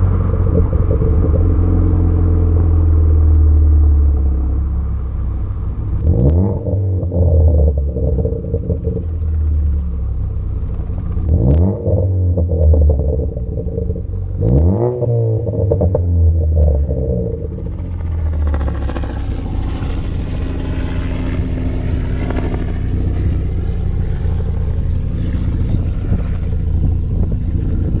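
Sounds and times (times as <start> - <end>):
car engine revving: 0.0 - 28.0
exhaust pops and crackles: 5.9 - 28.0.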